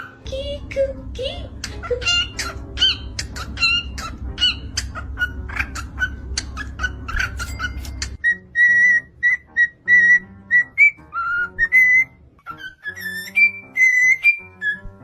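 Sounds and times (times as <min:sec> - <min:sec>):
low steady hum: 0:00.0 - 0:12.5
parrot squawking and chirping: 0:01.5 - 0:15.0
parrot whistling: 0:02.0 - 0:15.0.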